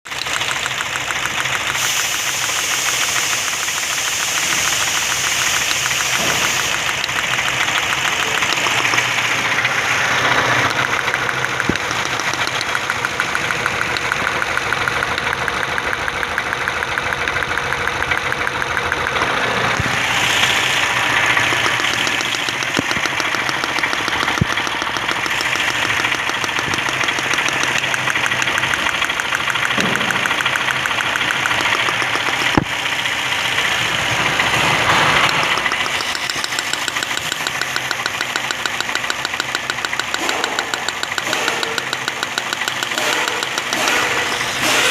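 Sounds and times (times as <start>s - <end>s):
engine idling with ticking: 0.0s - 44.9s.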